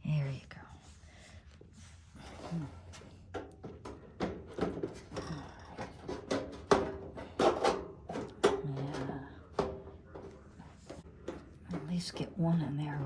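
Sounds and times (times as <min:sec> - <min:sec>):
rubbing of parts: 0:01.4 - 0:13.0
heater parts knocking and clicking: 0:03.2 - 0:13.0.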